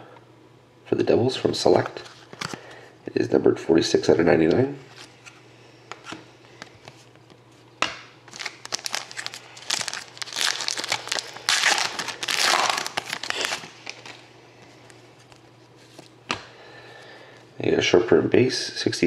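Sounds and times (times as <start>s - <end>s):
plastic wrapper tearing and crinkling: 8.3s - 14.2s.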